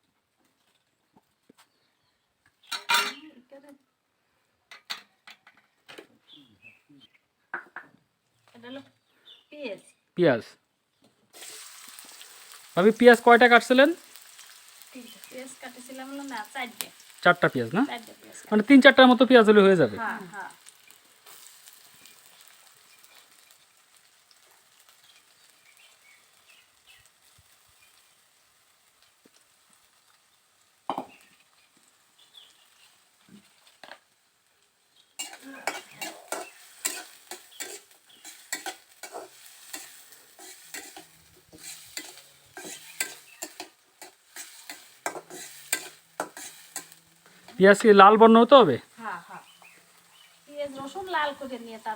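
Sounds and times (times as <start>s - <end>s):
onions sizzling in oil: 11.3s - 51.9s
spatula scraping a pan: 35.1s - 47.6s.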